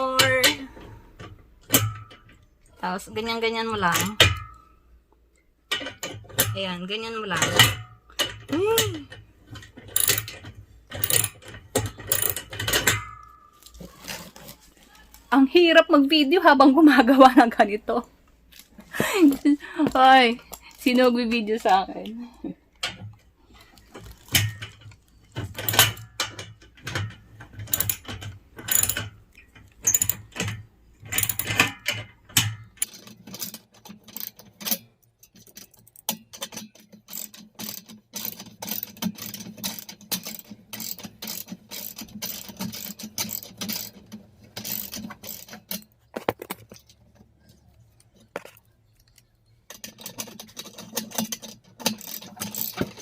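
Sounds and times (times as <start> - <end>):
ratchet wrench clicking: 7.4 - 13.8, 24.0 - 46.0, 49.0 - 53.0.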